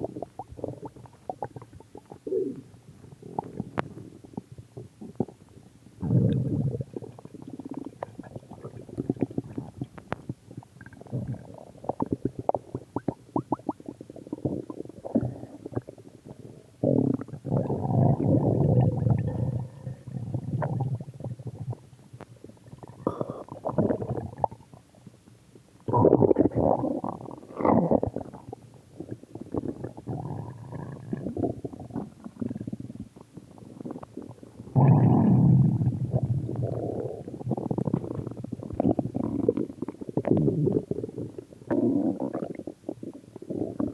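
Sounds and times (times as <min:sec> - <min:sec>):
stomach growling: 0:00.0 - 0:25.2, 0:25.8 - 0:43.9.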